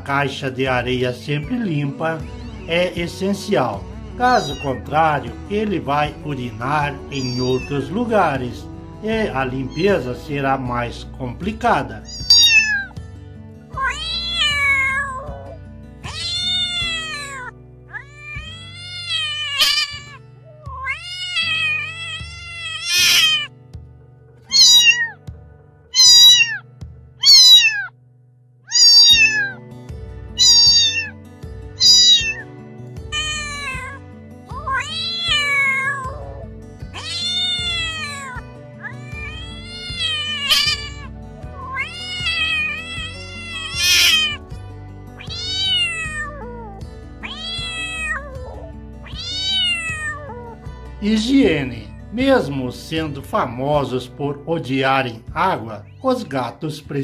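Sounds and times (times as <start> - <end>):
background music: 0.0 - 57.0
cat meowing: 4.2 - 4.9, 6.9 - 7.9, 12.0 - 13.0, 13.7 - 23.5, 24.5 - 25.2, 25.9 - 28.0, 28.7 - 29.6, 30.3 - 31.2, 31.8 - 32.5, 33.1 - 44.5, 45.2 - 50.6.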